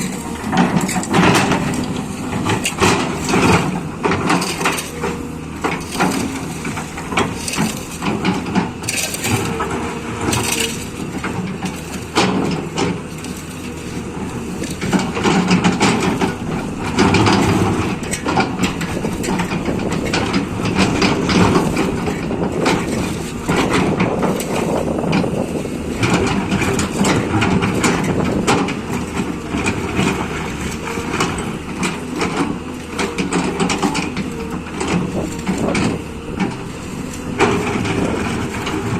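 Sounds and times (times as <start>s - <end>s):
excavator diesel engine running: 0.0s - 38.9s
knocks clanks and crunching: 0.0s - 38.9s.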